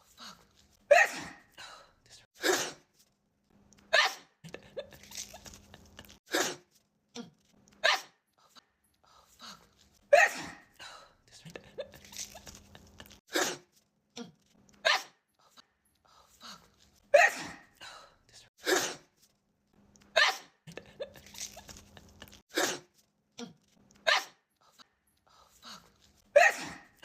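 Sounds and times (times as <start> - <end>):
woman sneezing: 0.9 - 1.5, 2.4 - 2.8, 6.3 - 6.7, 10.1 - 10.7, 13.3 - 13.7, 17.1 - 17.7, 18.6 - 19.1, 22.5 - 22.9, 26.4 - 27.0
sniffs: 17.8 - 19.3, 20.7 - 23.1.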